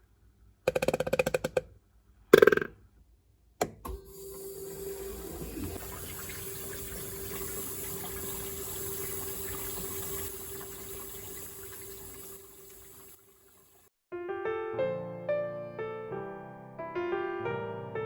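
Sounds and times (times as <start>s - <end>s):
washing machine running: 3.8s - 13.9s
piano music: 14.1s - 18.0s.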